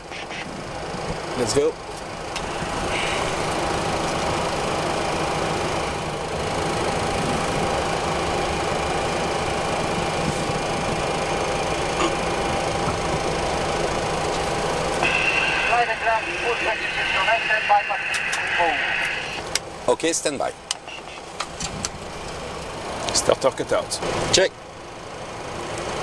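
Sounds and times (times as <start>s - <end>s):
jet engine starting whine: 2.1s - 23.3s.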